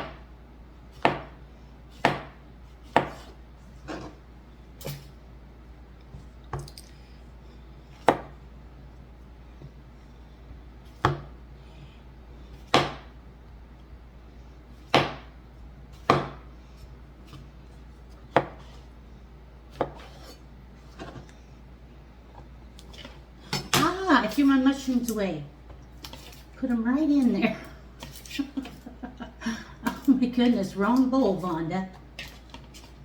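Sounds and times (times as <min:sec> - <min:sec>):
steady low hum: 0:00.0 - 0:33.0
knife chopping on cutting board: 0:01.0 - 0:04.1, 0:08.0 - 0:08.3, 0:10.9 - 0:11.3, 0:12.6 - 0:13.1, 0:14.8 - 0:15.3, 0:16.0 - 0:16.4, 0:18.3 - 0:18.8, 0:19.7 - 0:20.4.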